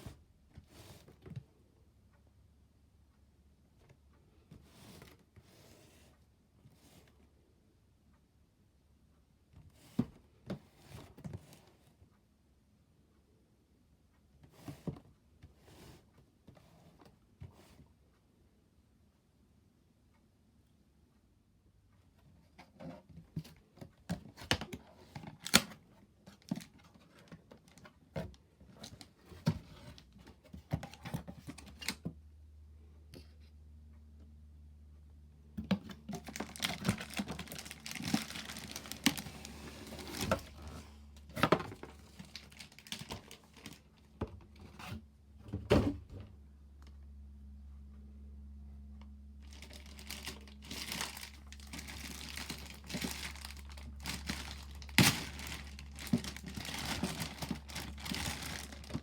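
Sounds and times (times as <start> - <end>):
packaging tearing and crinkling: 36.0 - 40.7, 42.0 - 43.8, 49.4 - 59.0.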